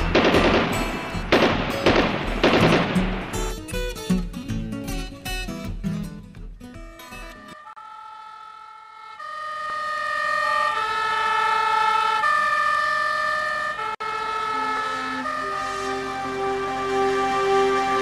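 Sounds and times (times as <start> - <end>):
sustained music chords: 14.3 - 18.0.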